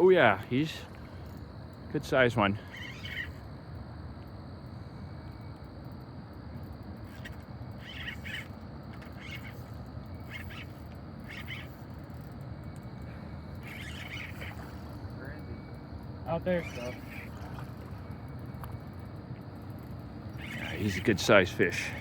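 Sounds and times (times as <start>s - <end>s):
bird chirping: 7.1s - 11.8s, 13.6s - 15.7s, 16.5s - 17.4s, 20.3s - 21.2s.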